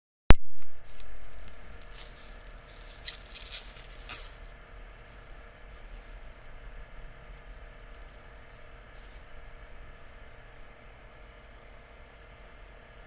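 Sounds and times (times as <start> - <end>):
snack packaging crinkling: 0.7 - 6.4.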